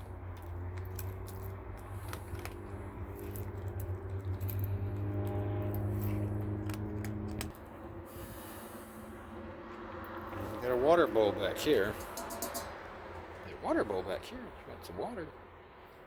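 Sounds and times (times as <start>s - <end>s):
cat crunching dry kibble: 0.0s - 7.8s.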